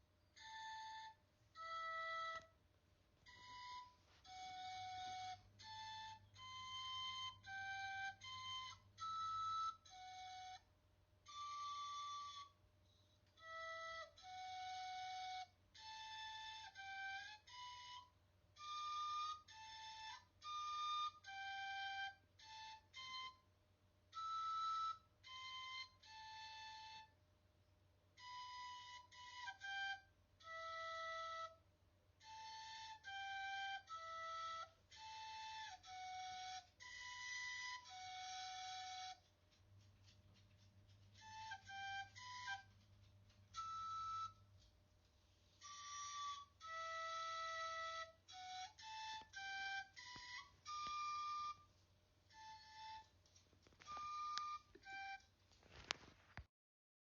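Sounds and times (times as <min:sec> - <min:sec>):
wind instrument melody: 0:00.0 - 0:02.6, 0:03.2 - 0:23.5, 0:24.1 - 0:27.2, 0:28.2 - 0:40.2, 0:40.9 - 0:44.7, 0:45.5 - 0:55.4.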